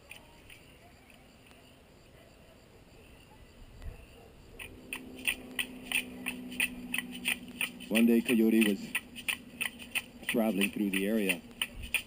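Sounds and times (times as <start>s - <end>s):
rhythmic clicking: 4.6s - 12.0s.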